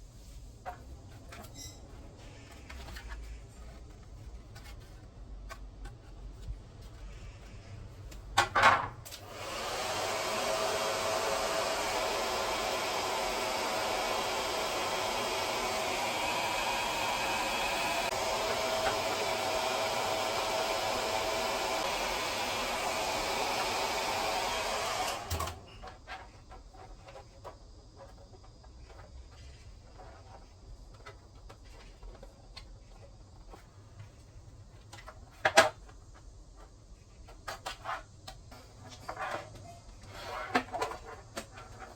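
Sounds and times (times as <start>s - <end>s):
air conditioner fan running: 9.0s - 25.8s.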